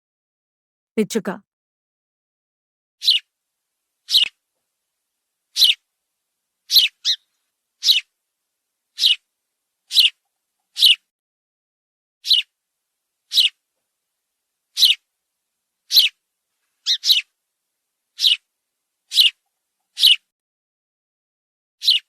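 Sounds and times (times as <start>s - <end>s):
sparrow chirping: 3.0s - 3.3s, 4.0s - 4.4s, 5.5s - 5.8s, 6.7s - 8.1s, 9.0s - 9.2s, 9.9s - 11.0s, 12.2s - 12.5s, 13.3s - 13.6s, 14.7s - 15.0s, 15.9s - 16.2s, 16.8s - 17.3s, 18.2s - 18.4s, 19.1s - 20.2s.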